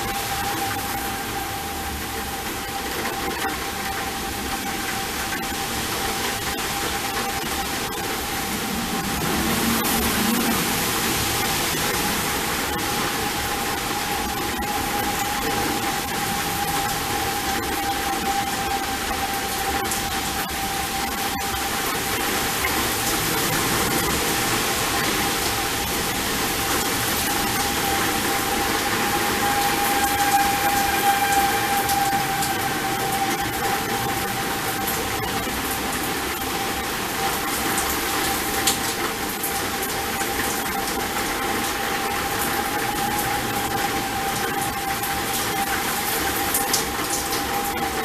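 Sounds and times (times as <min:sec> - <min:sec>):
warning siren steady tone: 0:00.0 - 0:48.0
rushing hiss of storm: 0:07.7 - 0:16.6.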